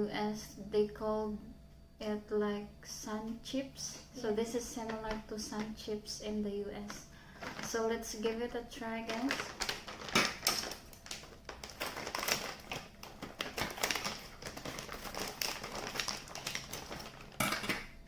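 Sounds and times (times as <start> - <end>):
chips being crunched: 9.1 - 18.0.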